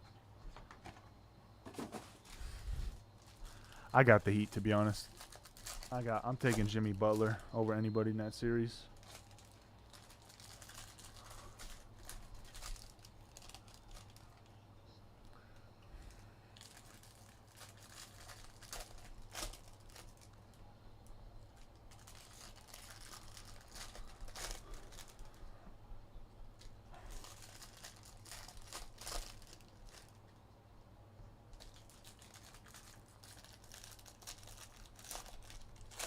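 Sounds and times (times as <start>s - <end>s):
card wrappers crinkling and tearing: 3.2s - 14.6s, 16.0s - 20.6s, 21.5s - 25.5s, 26.6s - 30.4s, 31.5s - 36.0s
cards being handled: 6.0s - 7.4s.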